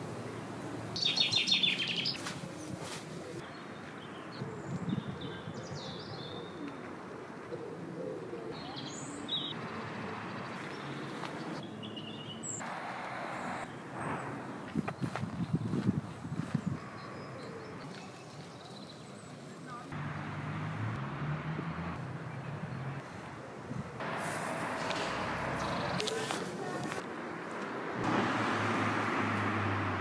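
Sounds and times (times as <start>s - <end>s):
outdoor background noise: 0.0s - 30.0s
small birds chirping: 0.9s - 20.0s.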